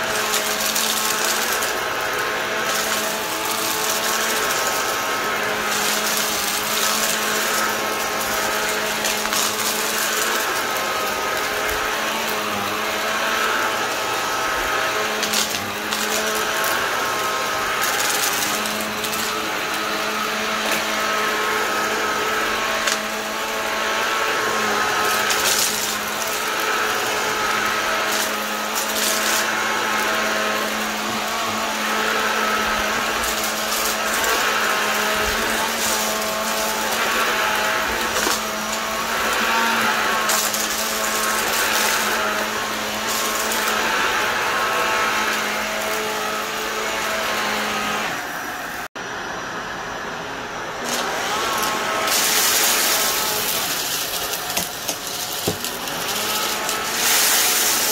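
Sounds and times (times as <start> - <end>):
vacuum cleaner motor whining: 0.0 - 57.9.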